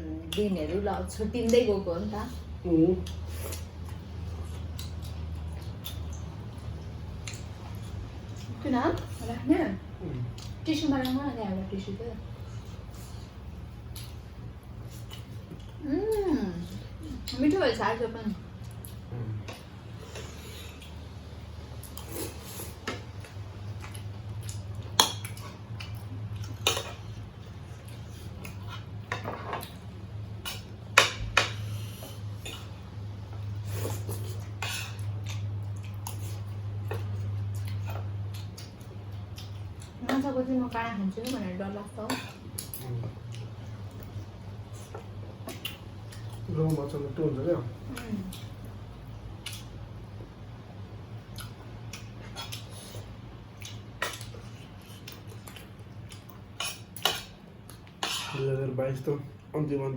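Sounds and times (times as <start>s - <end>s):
steady low hum: 0.0s - 59.9s
chewing smacks: 3.0s - 9.1s, 21.8s - 29.0s, 32.0s - 40.2s, 42.1s - 46.8s, 47.9s - 50.2s, 51.2s - 58.4s.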